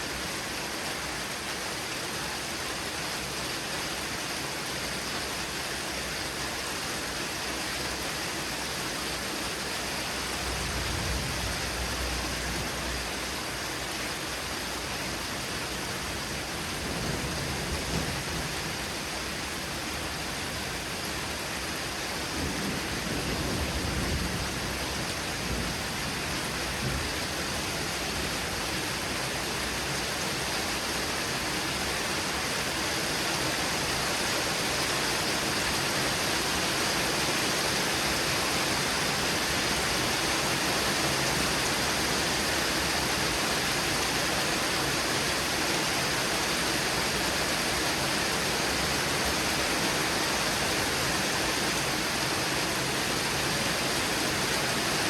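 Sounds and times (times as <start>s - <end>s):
heavy rain falling: 0.0s - 55.0s
thunder rumbling: 10.3s - 13.0s.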